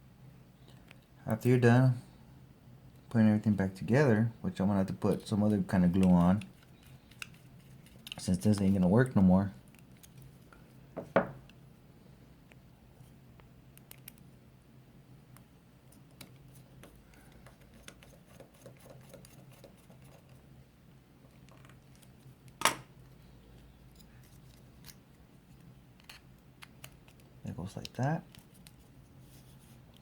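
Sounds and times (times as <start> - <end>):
faint steady hum: 0.0 - 30.0
plastic parts clicking: 5.1 - 8.8.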